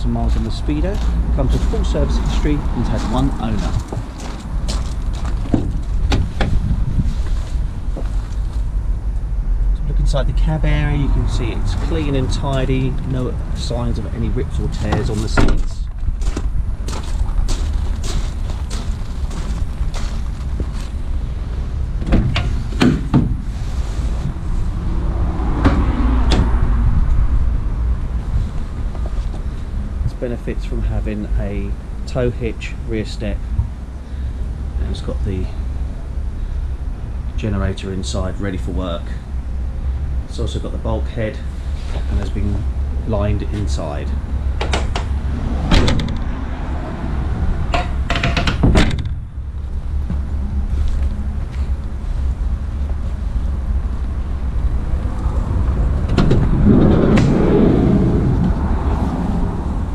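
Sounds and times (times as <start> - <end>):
wind on microphone: 0.0 - 8.4, 21.0 - 30.2, 52.8 - 59.9
wind rumble on microphone: 0.0 - 38.2, 41.5 - 59.9
van doors opening and shutting: 0.9 - 8.5, 14.8 - 16.5, 21.5 - 24.4, 25.4 - 27.3, 44.2 - 50.3, 54.8 - 59.9
van doors clunking shut: 2.9 - 6.8, 14.8 - 16.4, 21.9 - 23.5, 44.5 - 49.4.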